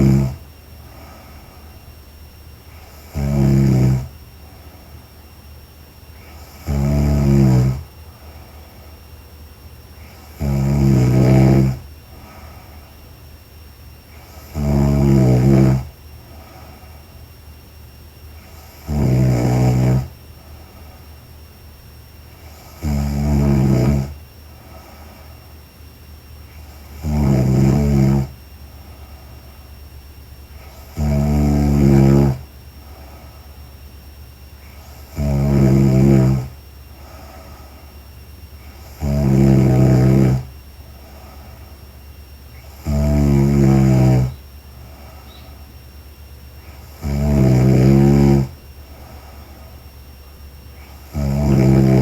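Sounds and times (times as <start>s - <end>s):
woman snoring: 0.0s - 1.8s, 2.6s - 4.2s, 6.2s - 7.9s, 10.0s - 12.8s, 14.1s - 16.8s, 18.4s - 20.2s, 22.3s - 25.2s, 26.6s - 28.4s, 30.5s - 33.5s, 34.6s - 37.8s, 38.6s - 41.7s, 42.5s - 45.7s, 46.6s - 49.8s, 50.8s - 52.0s.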